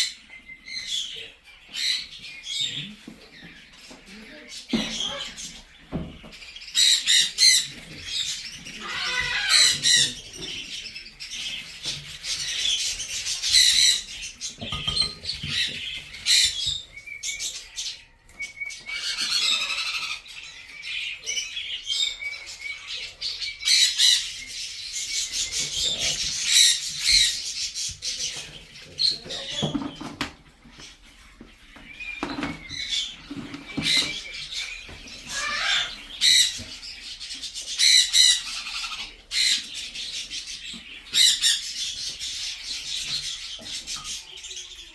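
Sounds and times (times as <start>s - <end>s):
parrots squawking and chirping: 0.0s - 44.9s.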